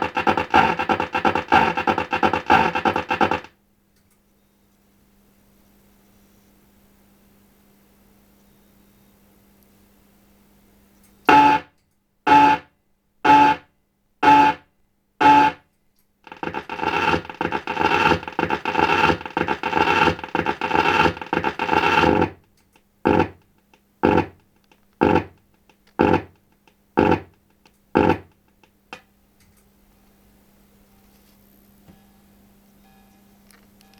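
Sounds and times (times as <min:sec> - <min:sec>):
distorted short tones: 0:00.0 - 0:03.5, 0:11.3 - 0:11.7, 0:12.3 - 0:13.6, 0:14.2 - 0:14.6, 0:15.2 - 0:15.6, 0:16.3 - 0:22.4, 0:23.1 - 0:23.4, 0:24.0 - 0:24.4, 0:25.0 - 0:25.4, 0:26.0 - 0:26.4, 0:27.0 - 0:27.3, 0:28.0 - 0:28.4
harsh noisy sound: 0:00.0 - 0:03.5, 0:13.3 - 0:13.6, 0:14.2 - 0:14.6, 0:15.2 - 0:15.6, 0:16.3 - 0:22.4, 0:23.0 - 0:23.4, 0:24.0 - 0:24.4, 0:25.0 - 0:25.4, 0:26.0 - 0:26.4, 0:27.0 - 0:27.4, 0:28.0 - 0:28.4
short distorted bursts: 0:00.0 - 0:03.5, 0:11.3 - 0:11.7, 0:12.3 - 0:13.6, 0:14.2 - 0:14.6, 0:15.2 - 0:15.6, 0:16.3 - 0:22.4, 0:23.1 - 0:23.4, 0:24.0 - 0:24.4, 0:25.0 - 0:25.4, 0:26.0 - 0:26.4, 0:27.0 - 0:27.4, 0:28.0 - 0:28.4.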